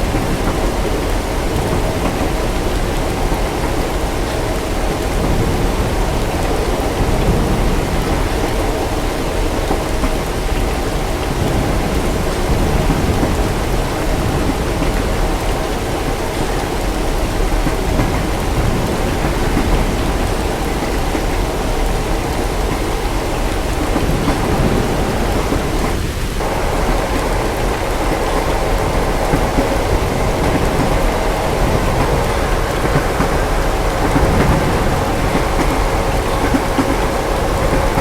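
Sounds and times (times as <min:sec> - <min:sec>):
heavy rain: 0:00.0 - 0:38.0
distant thunder rumble: 0:23.7 - 0:38.0.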